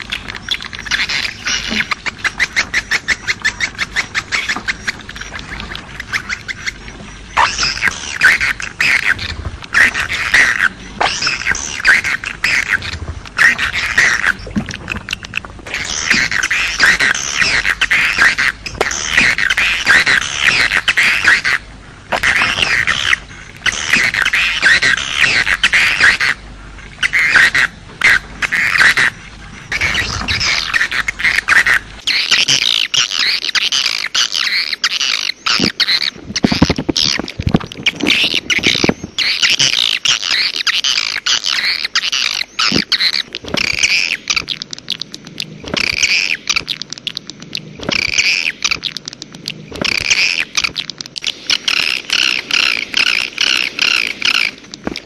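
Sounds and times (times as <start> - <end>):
bird calling in high notes: 0.0 - 26.4, 27.0 - 54.8.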